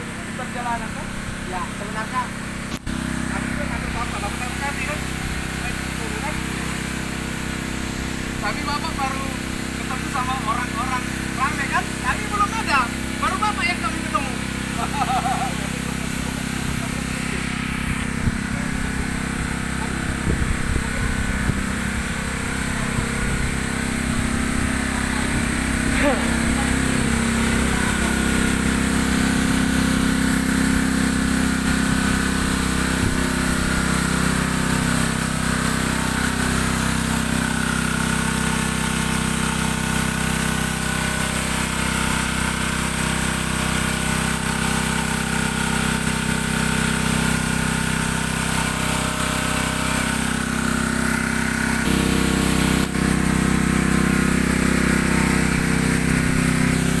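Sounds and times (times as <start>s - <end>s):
boat engine running: 0.0s - 57.0s.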